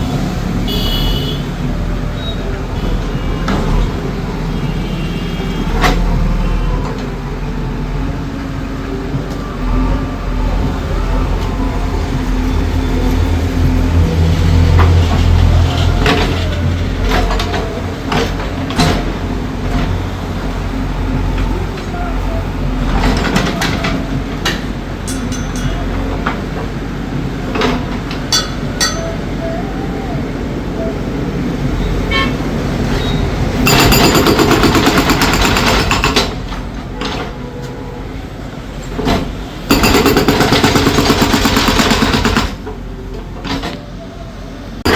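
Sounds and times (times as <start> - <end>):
diesel engine running: 0.0 - 37.0, 44.5 - 44.9
sharp knocks and clanks: 22.9 - 26.7, 27.5 - 29.2, 33.6 - 37.4, 38.9 - 42.8.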